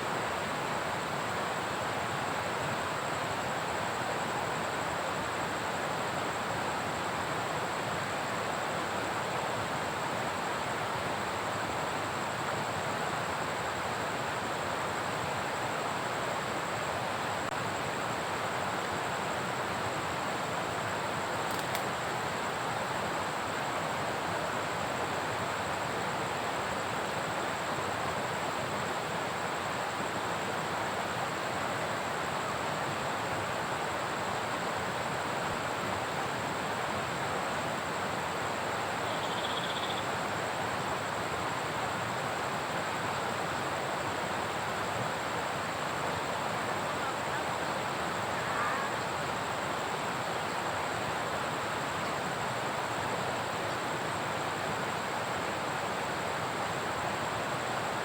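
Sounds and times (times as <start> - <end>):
rushing water: 0.0 - 39.0, 40.1 - 58.0
faint click: 21.4 - 22.0.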